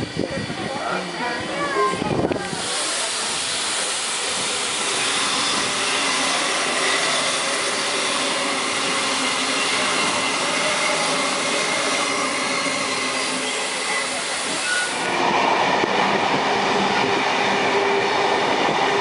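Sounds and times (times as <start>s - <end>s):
train rumbling on rails: 0.0s - 19.0s.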